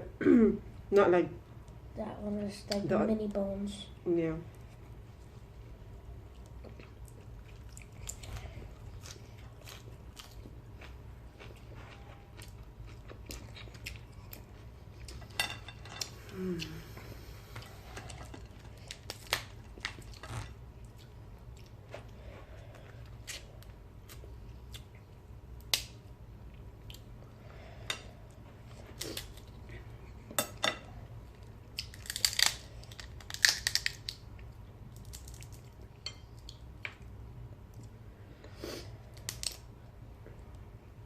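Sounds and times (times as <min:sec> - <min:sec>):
person chewing crunchy food: 0:06.3 - 0:15.3.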